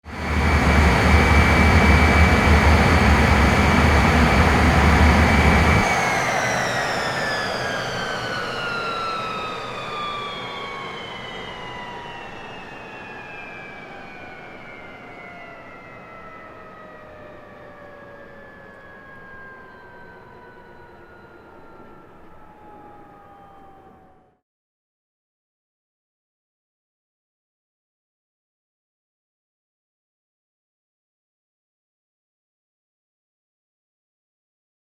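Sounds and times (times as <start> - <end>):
aircraft engine whine: 0.0 - 24.4
aircraft engine deep rumble: 0.1 - 14.0.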